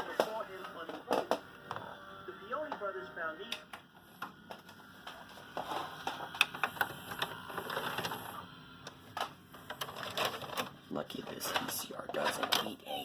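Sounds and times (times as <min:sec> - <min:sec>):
tape mechanism whirring and clicking: 0:05.5 - 0:12.7.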